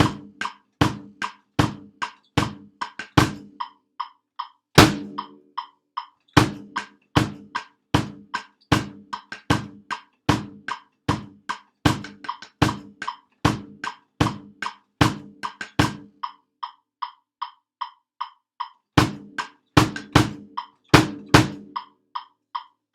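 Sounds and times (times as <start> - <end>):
snare and bass drum beat: 0.0 - 4.1, 4.8 - 16.4, 18.6 - 22.7
metronome click: 2.0 - 7.7, 15.4 - 22.8.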